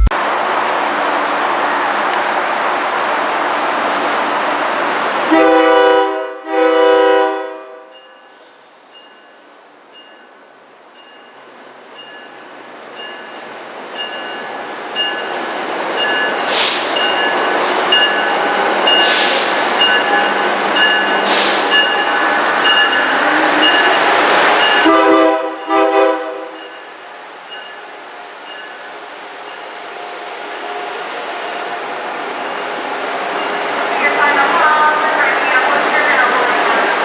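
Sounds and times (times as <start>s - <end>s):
train passing: 0.0s - 37.0s
train horn blasts: 5.3s - 8.0s, 24.6s - 26.6s.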